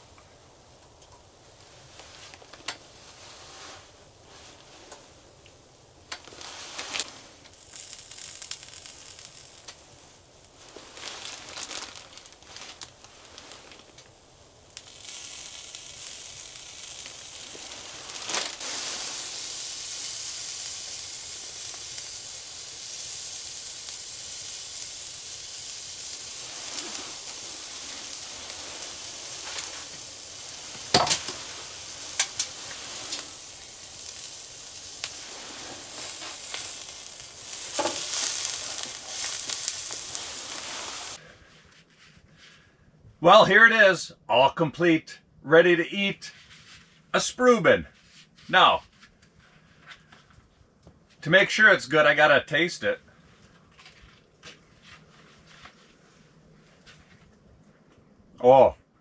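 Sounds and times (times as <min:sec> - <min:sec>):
meat sizzling in a pan: 0:00.0 - 0:41.2.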